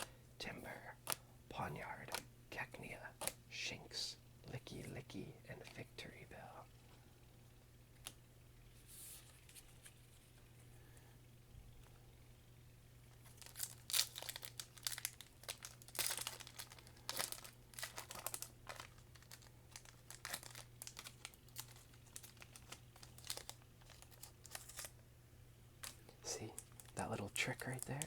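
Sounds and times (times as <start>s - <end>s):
foil wrapper crinkling and tearing: 13.2s - 24.9s, 25.8s - 28.0s.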